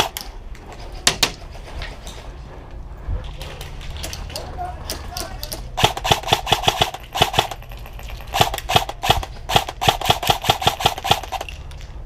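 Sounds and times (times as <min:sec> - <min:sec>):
airsoft gun shots: 0:05.8 - 0:07.6, 0:08.3 - 0:11.5.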